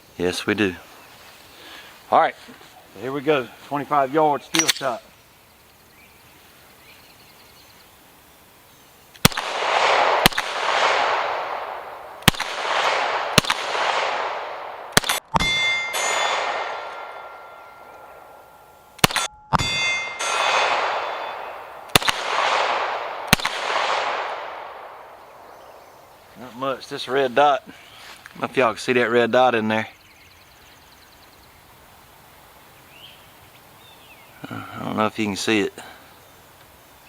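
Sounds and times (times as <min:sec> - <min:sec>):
pistol shots with echo: 0:09.2 - 0:18.4, 0:19.0 - 0:25.9
steel targets ringing: 0:15.4 - 0:21.8.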